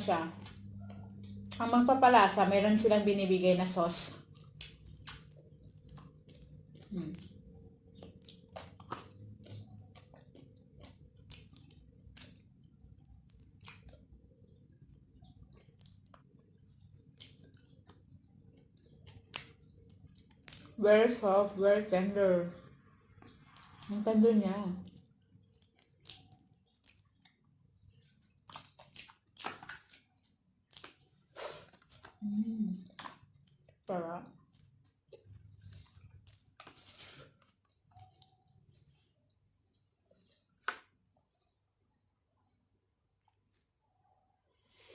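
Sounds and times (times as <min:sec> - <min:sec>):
person chewing: 0:04.3 - 0:14.1, 0:14.9 - 0:20.8, 0:24.9 - 0:32.2, 0:34.4 - 0:39.0
wet mouth clicks and smacks: 0:17.2 - 0:20.7.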